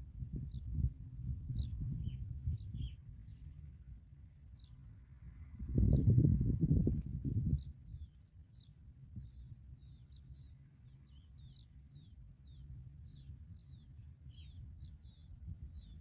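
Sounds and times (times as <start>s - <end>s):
small bird chirping: 6.8s - 16.0s.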